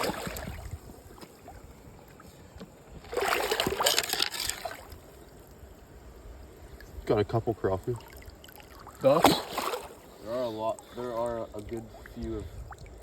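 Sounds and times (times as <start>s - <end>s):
water splashing in shallows: 0.0s - 2.2s, 3.0s - 5.0s, 7.8s - 13.0s
faint trickle of running water: 10.0s - 13.0s.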